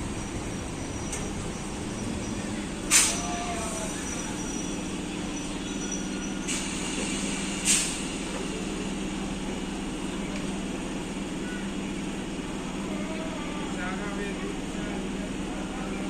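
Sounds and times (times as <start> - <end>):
train running with low hum: 0.0 - 16.0.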